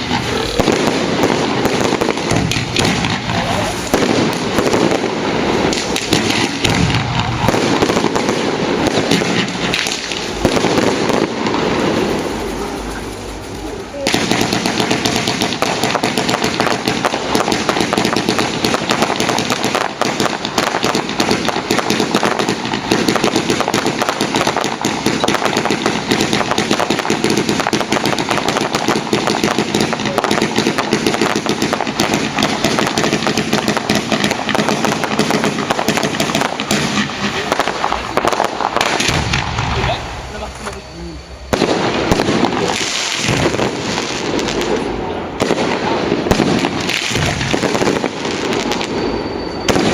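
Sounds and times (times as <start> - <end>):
firecrackers banging rapidly: 0.0 - 49.9.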